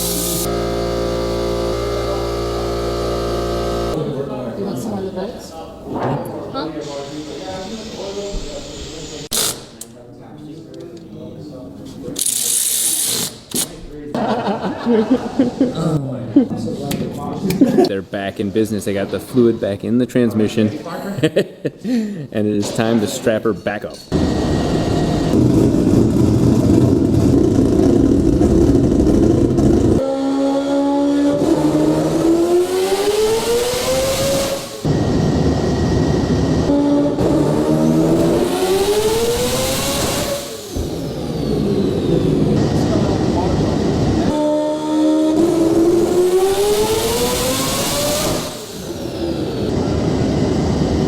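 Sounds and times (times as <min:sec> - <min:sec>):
hiss: 0:00.0 - 0:00.5, 0:06.8 - 0:09.6
rotary engine revving on dyno: 0:00.0 - 0:04.1, 0:24.1 - 0:51.0.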